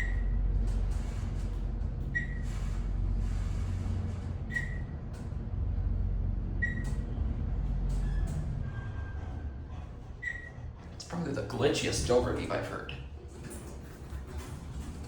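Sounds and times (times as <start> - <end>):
elevator electronic beep: 0.0 - 0.8, 2.0 - 2.7, 4.5 - 4.9, 6.5 - 7.2, 10.2 - 10.7
low hum of moving elevator: 0.0 - 15.0.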